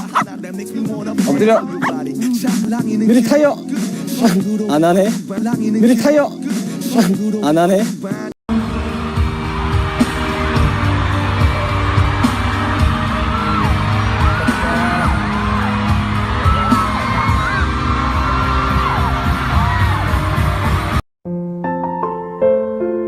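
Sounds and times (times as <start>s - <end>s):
loud pop music with singing: 0.0s - 8.3s, 10.2s - 17.7s
people whooping and yelling: 13.0s - 20.1s.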